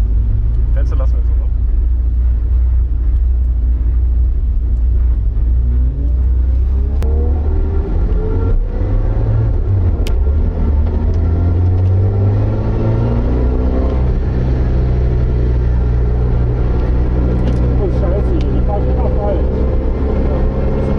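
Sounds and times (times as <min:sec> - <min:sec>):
car engine revving from inside cabin: 0:05.0 - 0:20.9.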